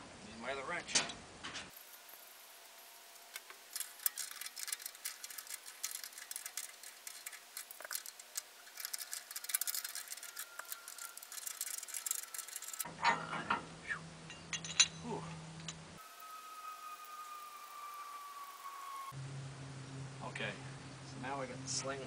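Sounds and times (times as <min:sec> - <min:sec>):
wrench metal clicking: 0:03.3 - 0:12.9.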